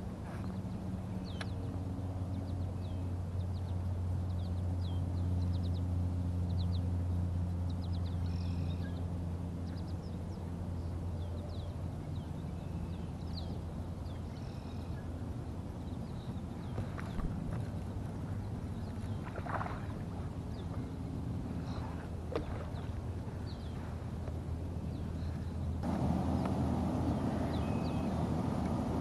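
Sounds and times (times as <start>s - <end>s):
low motor hum: 0.0s - 29.0s
small birds chirping: 0.5s - 6.9s, 24.9s - 28.3s.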